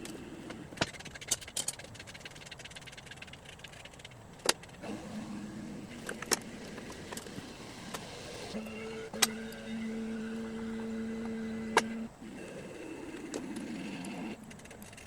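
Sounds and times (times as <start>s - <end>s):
rapid ratchet clicks: 0.7s - 4.9s.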